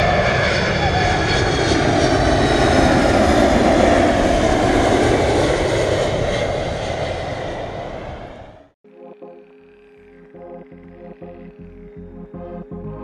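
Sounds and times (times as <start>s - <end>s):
loud engine roar: 0.0s - 8.7s.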